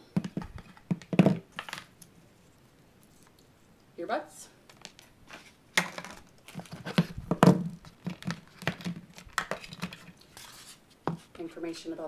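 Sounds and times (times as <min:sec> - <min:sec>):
wrapping crinkling: 0:04.7 - 0:10.8.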